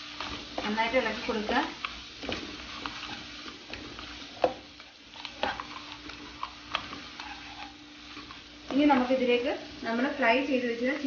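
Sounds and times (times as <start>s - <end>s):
low sizzle: 0.0s - 11.0s
spoon stirring thick sauce: 1.7s - 9.1s.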